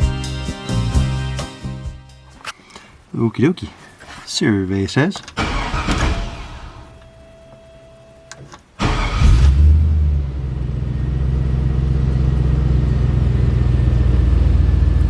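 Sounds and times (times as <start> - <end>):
car engine starting and idling: 5.4 - 15.0.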